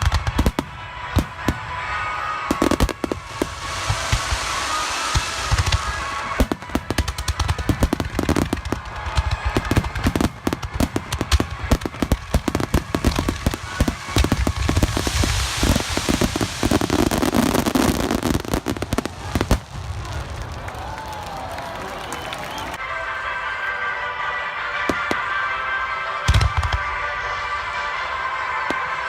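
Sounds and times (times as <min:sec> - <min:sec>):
fireworks low booms: 0:00.0 - 0:20.8
fireworks cracking and popping: 0:00.0 - 0:22.8, 0:26.3 - 0:27.1.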